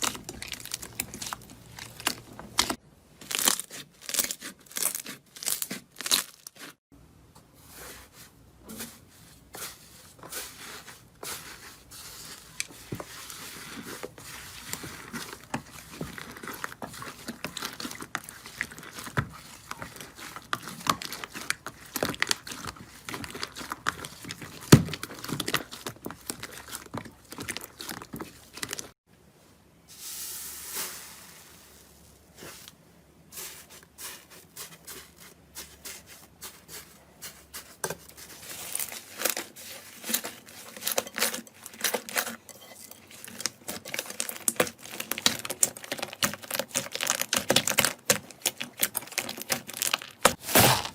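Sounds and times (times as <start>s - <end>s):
slime crackling and popping: 43.4s - 50.9s.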